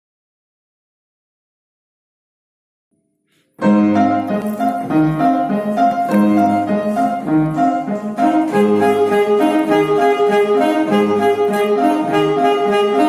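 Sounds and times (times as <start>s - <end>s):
piano playing: 3.6s - 13.0s
saxophone melody: 3.6s - 13.0s.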